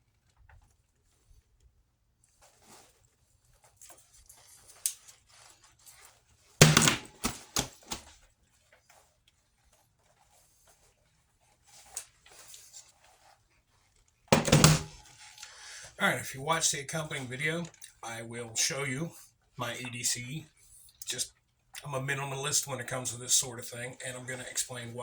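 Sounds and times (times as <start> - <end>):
objects clicking and knocking: 6.6 - 8.2, 14.4 - 15.5.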